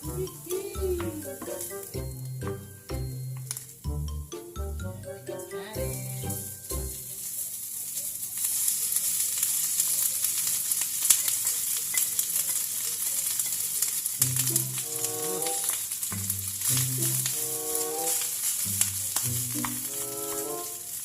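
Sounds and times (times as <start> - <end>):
rice sizzling in a frying pan: 0.0 - 4.0, 5.3 - 21.0
background music: 0.0 - 7.1, 14.2 - 21.0
stirring clicks: 8.4 - 21.0.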